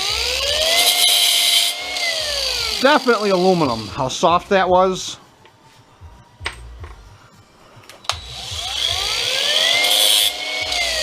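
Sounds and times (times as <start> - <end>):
power tool whining: 0.0 - 4.1, 7.9 - 11.0
tool cutting metal hiss: 0.7 - 4.0, 8.1 - 11.0.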